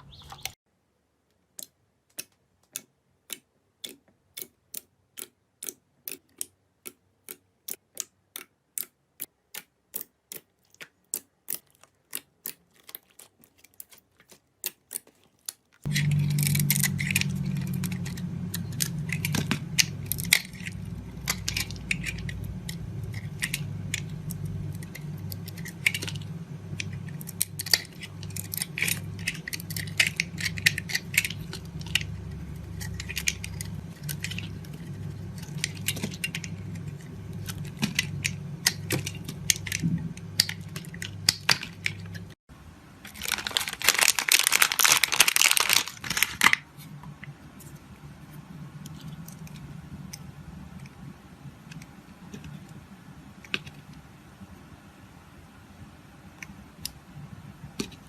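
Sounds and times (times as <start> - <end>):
scratchy crunching: 11.5 - 42.4, 43.1 - 46.6
craft material crackling: 12.6 - 42.4, 43.0 - 46.6
low steady hum: 15.8 - 58.0.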